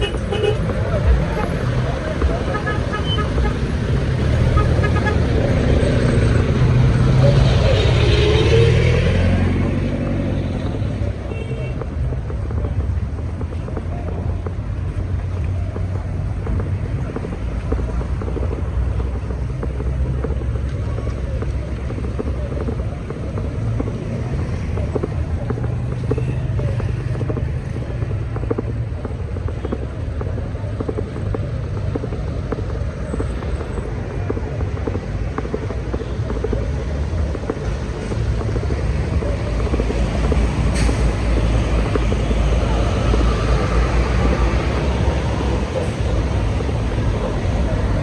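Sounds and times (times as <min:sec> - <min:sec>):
raindrop ticks: 0:00.0 - 0:08.1, 0:09.8 - 0:48.0
heavy rain: 0:38.9 - 0:48.0.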